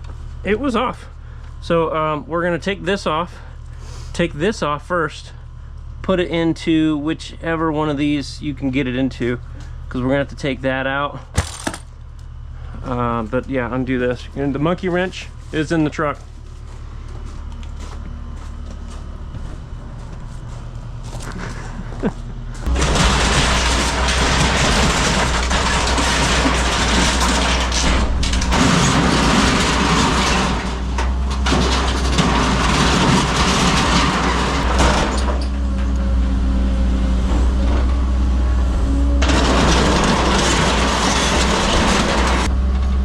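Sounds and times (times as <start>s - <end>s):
excavator diesel engine running: 12.5s - 43.0s.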